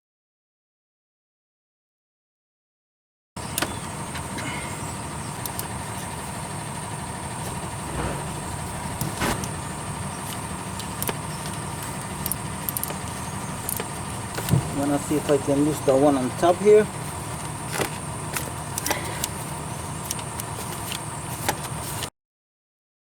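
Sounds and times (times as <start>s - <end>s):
low mechanical hum: 3.4s - 22.1s
sharp knock: 7.9s - 9.6s.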